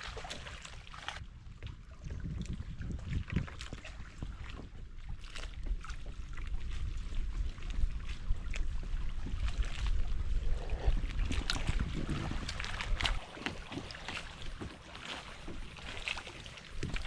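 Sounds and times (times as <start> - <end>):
paddle splashes and dripping: 0.0 - 17.0
low rumble: 7.3 - 13.2.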